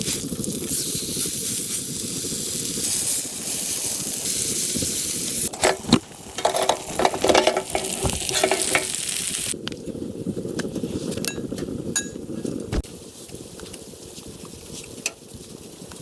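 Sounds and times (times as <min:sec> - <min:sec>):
food sizzling in a pan: 0:00.0 - 0:09.6
utensil scraping in a pan: 0:00.1 - 0:09.6.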